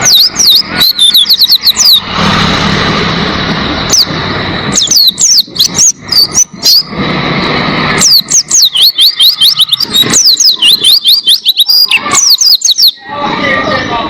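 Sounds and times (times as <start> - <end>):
bird singing whistled notes: 0.0 - 2.0, 4.7 - 6.9, 8.0 - 13.0
rushing background noise: 0.0 - 14.0.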